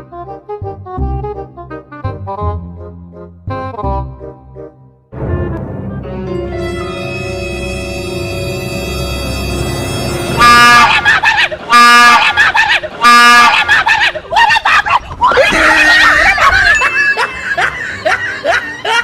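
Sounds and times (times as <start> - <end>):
loud train horn blasts: 6.4 - 10.9
people shouting: 10.8 - 16.9
people screaming: 10.8 - 19.0.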